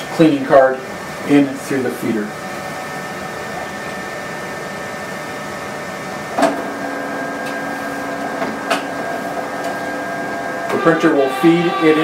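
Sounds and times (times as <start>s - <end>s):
printer motor hum: 3.1s - 12.0s.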